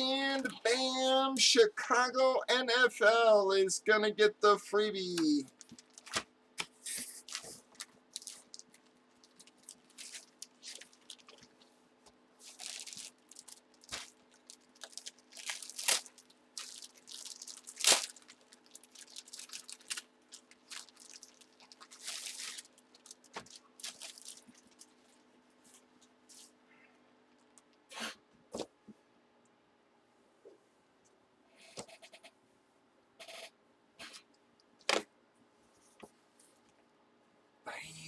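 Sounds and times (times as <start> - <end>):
plastic packaging crinkling: 5.5 - 6.3, 7.0 - 11.7, 12.4 - 25.2.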